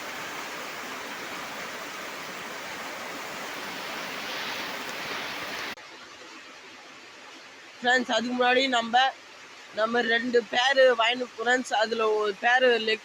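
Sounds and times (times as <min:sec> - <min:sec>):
heavy rain falling: 0:00.0 - 0:05.8.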